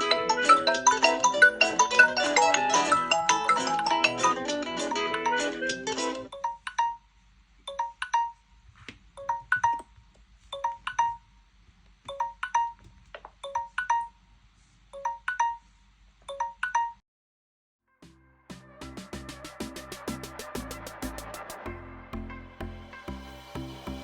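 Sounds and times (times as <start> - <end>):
smartphone ringtone: 0.0 - 4.6.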